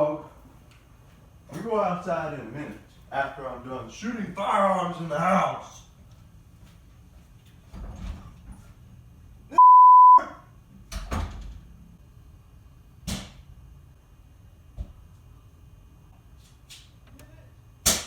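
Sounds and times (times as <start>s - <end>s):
censor beep: 9.6s - 10.2s.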